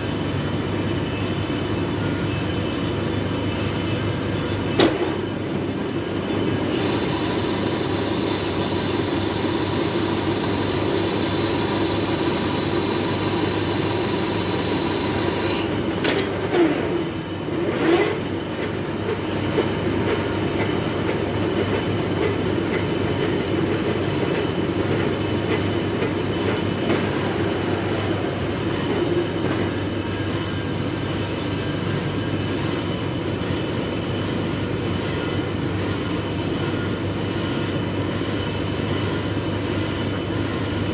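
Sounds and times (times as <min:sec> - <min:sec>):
high-pitched whine: 0:06.7 - 0:15.8
metal lathe rumbling: 0:06.7 - 0:17.6.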